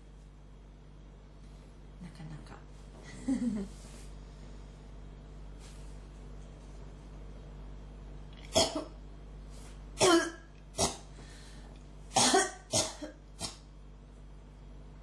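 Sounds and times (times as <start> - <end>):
person coughing: 8.5 - 9.0, 10.0 - 11.1, 12.1 - 13.7.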